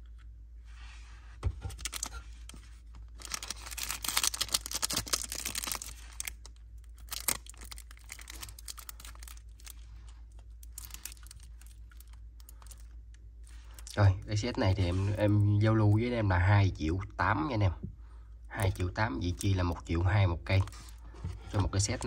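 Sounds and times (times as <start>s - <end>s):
packaging rustling and crinkling: 1.7s - 13.9s.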